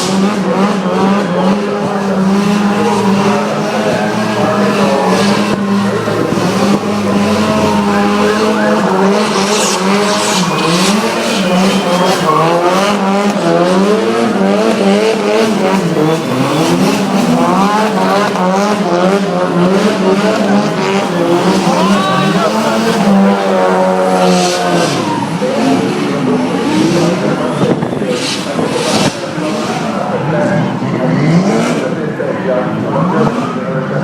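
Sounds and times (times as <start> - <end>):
car engines revving: 0.0 - 34.0
tyre squeal: 2.2 - 13.3.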